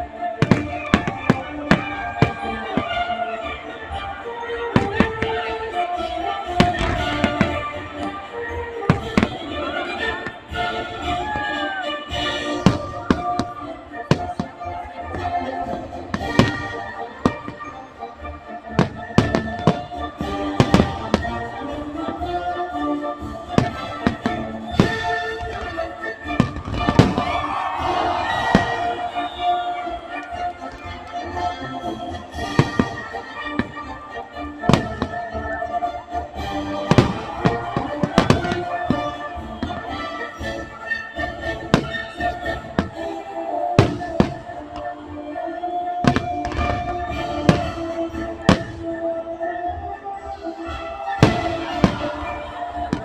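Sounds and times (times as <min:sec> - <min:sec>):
music playing: 0:00.0 - 0:53.0
fireworks bangs: 0:00.4 - 0:03.1, 0:06.6 - 0:07.7, 0:12.5 - 0:14.6, 0:18.8 - 0:21.4, 0:26.4 - 0:30.3, 0:32.4 - 0:33.9, 0:34.6 - 0:35.3, 0:36.6 - 0:39.9, 0:41.6 - 0:43.0, 0:43.8 - 0:44.8, 0:46.0 - 0:48.9, 0:51.2 - 0:53.0.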